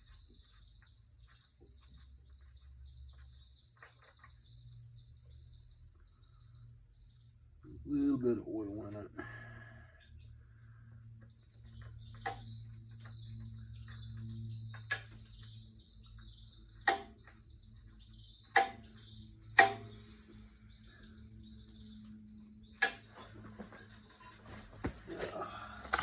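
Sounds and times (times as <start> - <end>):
sharp clicks and knocks: 16.7 - 17.4, 18.4 - 20.0, 22.8 - 25.1.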